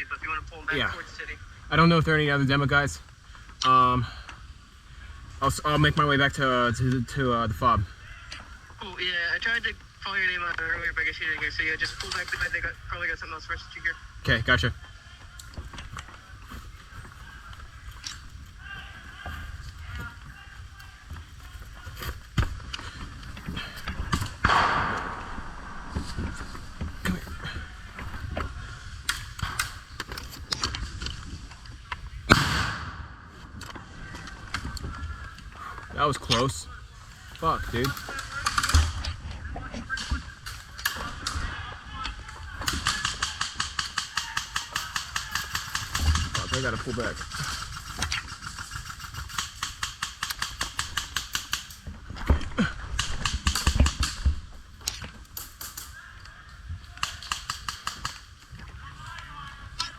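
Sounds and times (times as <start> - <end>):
footsteps: 14.8 - 32.2
airsoft guns firing clicks: 24.1 - 25.9, 42.6 - 51.8, 53.0 - 55.9, 56.9 - 58.4
loud crack with hissing tail: 24.3 - 27.2.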